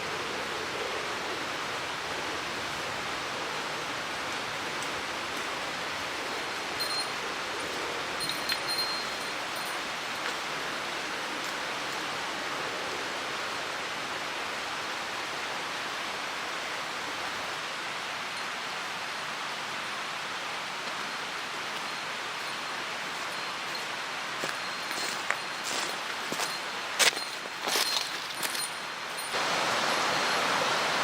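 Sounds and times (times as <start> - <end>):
stream water rushing: 0.0 - 31.0.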